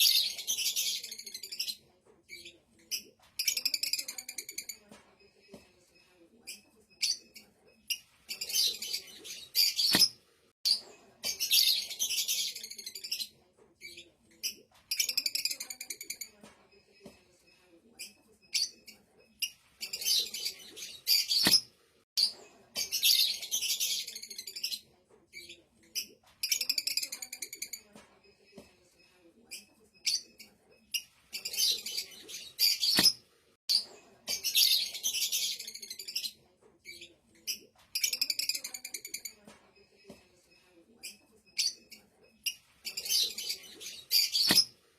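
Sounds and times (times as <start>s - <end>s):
lovebird chirping and chattering: 0.0s - 4.8s, 6.4s - 16.4s, 17.9s - 27.9s, 29.5s - 39.4s, 41.0s - 44.8s.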